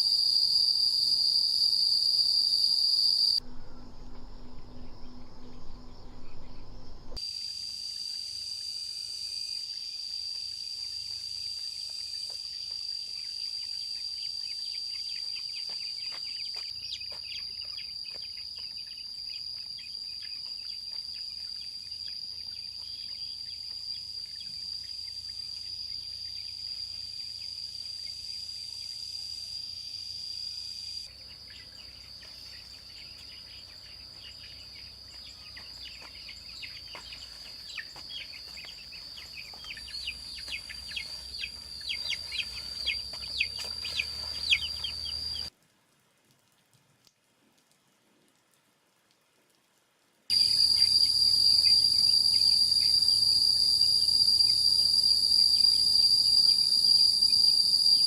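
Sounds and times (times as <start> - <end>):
insect chorus drone: 0.0 - 45.5, 50.3 - 58.0
low hum: 3.4 - 7.2.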